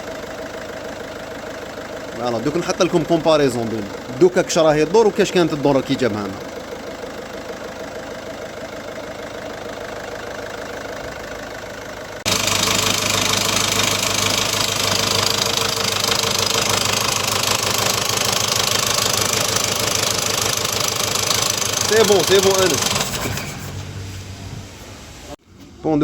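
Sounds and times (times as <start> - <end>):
engine knocking clatter: 0.0 - 23.8
diesel engine idling: 0.0 - 26.0.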